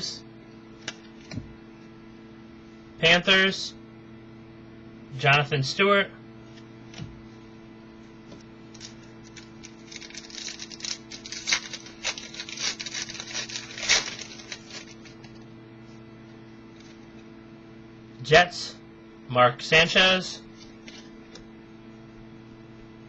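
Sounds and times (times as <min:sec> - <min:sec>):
steady electrical hum: 0:00.0 - 0:23.0
card packaging crinkling: 0:08.6 - 0:15.4.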